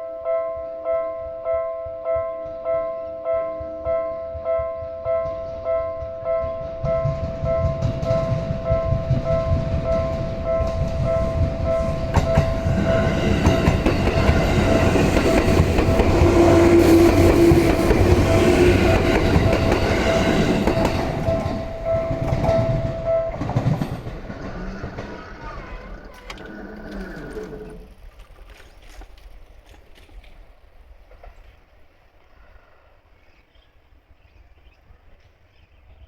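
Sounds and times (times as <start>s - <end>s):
crossing warning bell ringing: 4.4s - 26.1s
electric train running: 6.8s - 26.6s.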